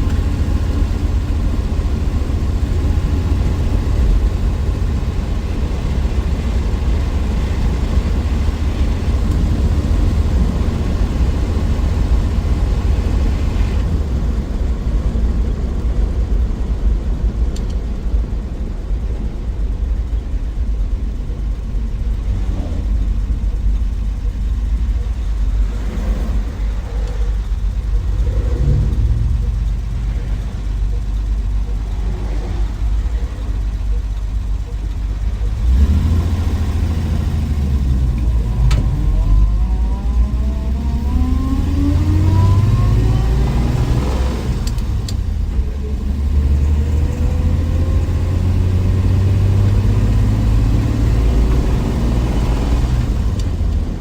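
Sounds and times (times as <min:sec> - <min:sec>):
car engine rumbling: 0:00.0 - 0:54.0
road noise: 0:00.0 - 0:54.0.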